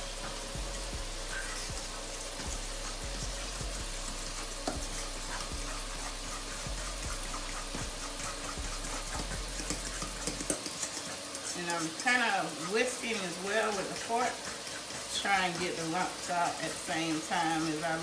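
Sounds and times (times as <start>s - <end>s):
oil sizzling in a frying pan: 0.0s - 18.0s
fork knocking against a bowl: 7.0s - 11.2s.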